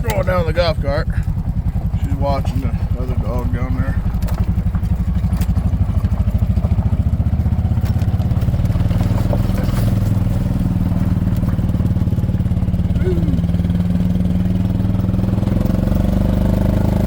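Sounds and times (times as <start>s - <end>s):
golf cart engine running: 0.0s - 17.0s.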